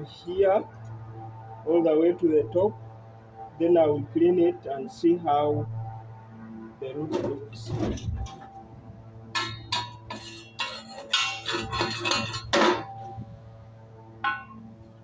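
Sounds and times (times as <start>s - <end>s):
metal plates clinking and knocking: 9.4s - 13.1s, 14.2s - 14.6s.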